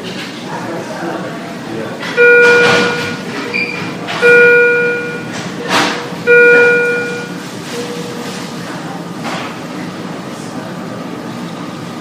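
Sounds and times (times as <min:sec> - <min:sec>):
background din: 0:02.2 - 0:03.3, 0:04.2 - 0:07.4
electronic alarm beep: 0:02.2 - 0:05.4, 0:06.3 - 0:07.4.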